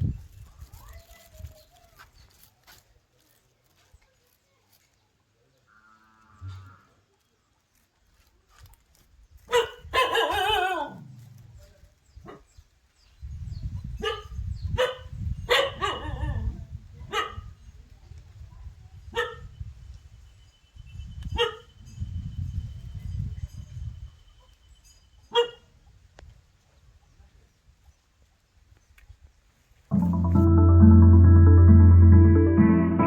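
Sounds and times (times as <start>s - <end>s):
dog barking: 9.5s - 10.9s, 14.0s - 16.4s, 17.1s - 17.4s, 19.2s - 19.4s, 21.4s - 21.6s, 25.3s - 25.6s.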